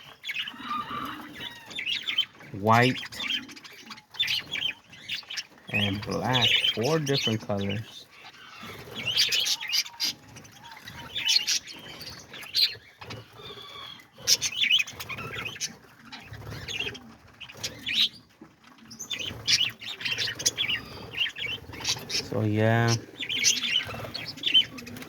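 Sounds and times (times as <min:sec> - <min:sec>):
parakeets chirping: 0:00.0 - 0:25.0
wings flapping: 0:08.6 - 0:25.0.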